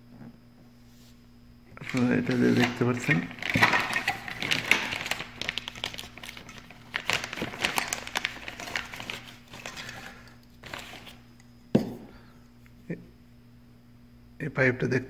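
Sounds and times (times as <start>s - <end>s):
plastic parts clicking and rustling: 1.8s - 11.2s.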